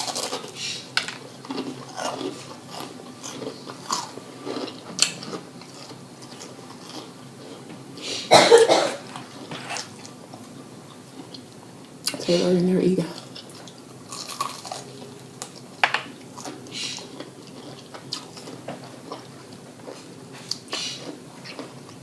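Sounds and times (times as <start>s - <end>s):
person chewing crunchy food: 0.0s - 8.2s, 13.2s - 22.0s.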